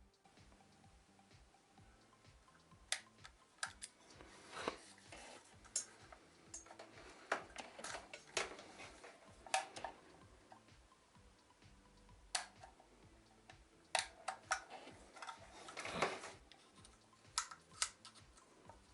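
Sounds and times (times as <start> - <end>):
plastic connectors clicking: 2.9 - 4.0, 5.2 - 10.6, 12.3 - 12.8, 13.5 - 18.5.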